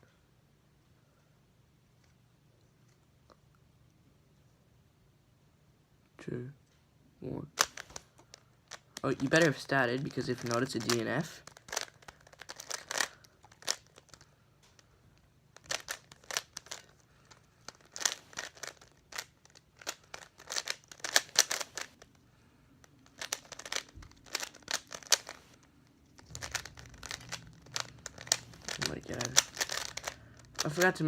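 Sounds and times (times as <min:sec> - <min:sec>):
puzzle cube plastic clicks: 0:07.6 - 0:22.2, 0:22.8 - 0:31.0.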